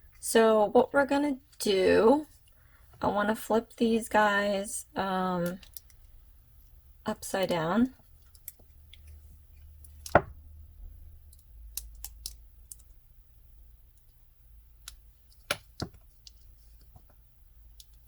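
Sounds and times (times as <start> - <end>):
plastic nail tips tapping: 11.3 - 12.9, 14.8 - 17.1.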